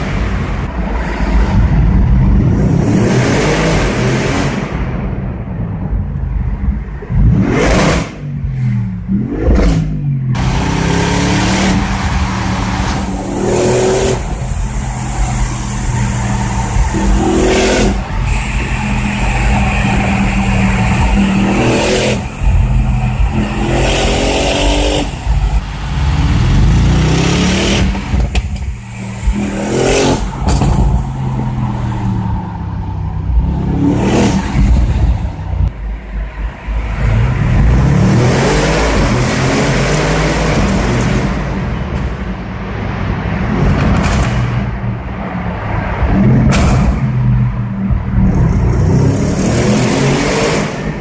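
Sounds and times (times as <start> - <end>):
car engine accelerating hard: 7.1 - 35.7
exhaust crackles and pops: 11.4 - 32.0, 43.6 - 44.8.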